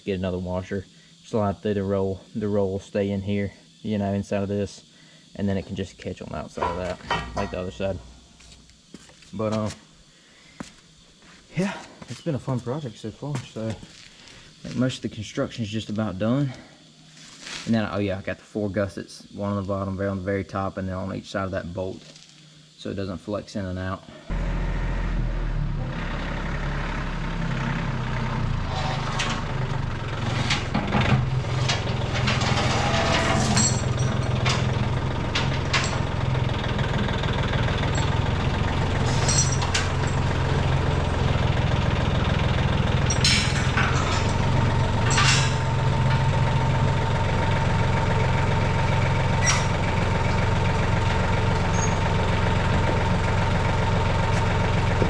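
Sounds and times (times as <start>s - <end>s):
thin steady whine: 0.0s - 25.7s
metallic clanks and knocks: 6.6s - 8.2s, 30.3s - 36.2s, 39.0s - 40.7s, 43.0s - 47.2s
skid steer engine running: 24.3s - 55.0s.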